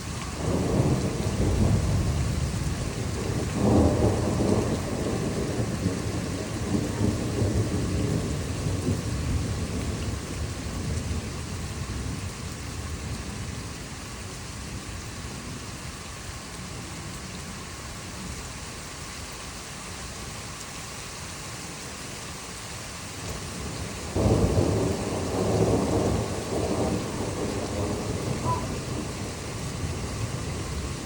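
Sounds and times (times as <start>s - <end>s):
thunder rumbling: 0.0s - 13.7s, 23.3s - 31.0s
steady rain: 0.0s - 31.0s
loud crack of thunder: 0.4s - 11.3s, 23.5s - 31.0s.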